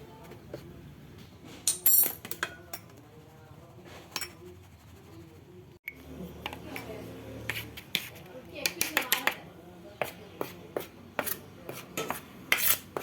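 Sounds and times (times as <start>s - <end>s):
metal kitchenware clinking on bowl: 1.6s - 3.0s.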